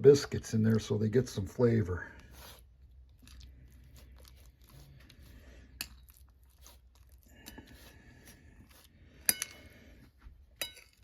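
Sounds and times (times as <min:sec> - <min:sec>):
biscuits tearing and squishing: 0:02.2 - 0:09.3.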